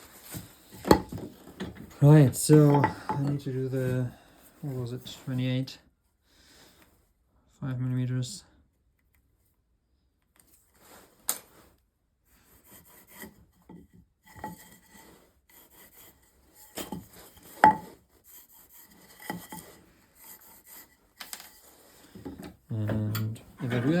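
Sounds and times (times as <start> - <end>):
scraping and rubbing on wood: 0.0 - 4.0, 12.5 - 24.0.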